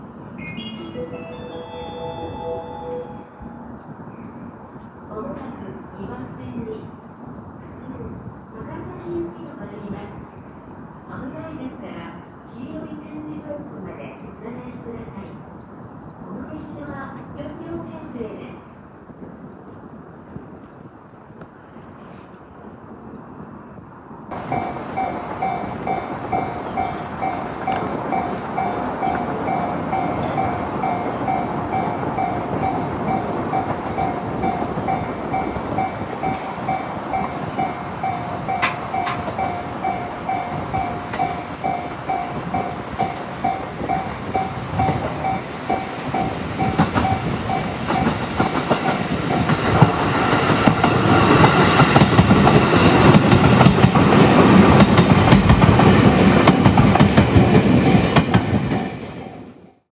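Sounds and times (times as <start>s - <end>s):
level crossing bell ringing: 0.4s - 3.8s
train wheels clattering: 24.3s - 59.5s.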